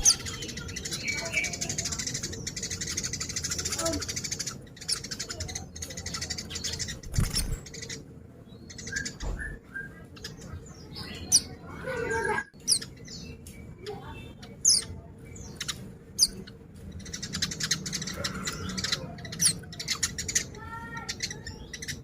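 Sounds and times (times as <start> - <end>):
high bird chirps and whistles: 0.0 - 8.0
bird chattering trill: 0.0 - 22.0.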